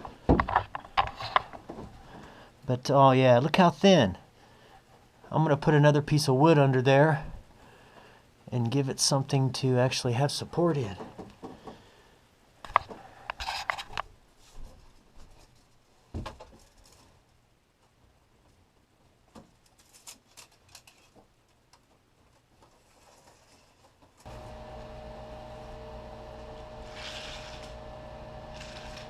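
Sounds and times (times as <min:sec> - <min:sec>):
steady hum with held tones: 0:24.3 - 0:29.0.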